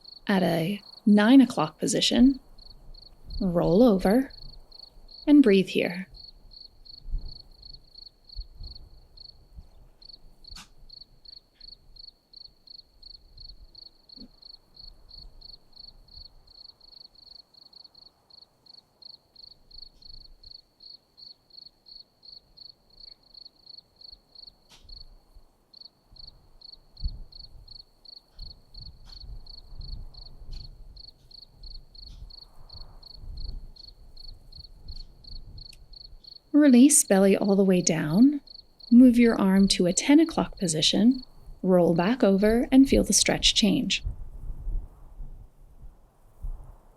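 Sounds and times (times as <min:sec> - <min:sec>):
cricket chirping: 0:00.0 - 0:42.2.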